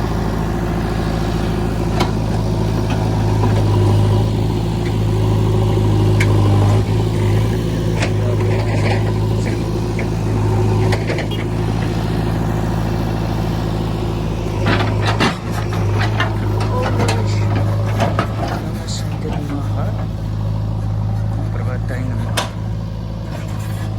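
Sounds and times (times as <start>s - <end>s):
diesel engine running: 0.0s - 23.9s
metallic clanks and knocks: 5.7s - 12.0s, 14.5s - 23.9s.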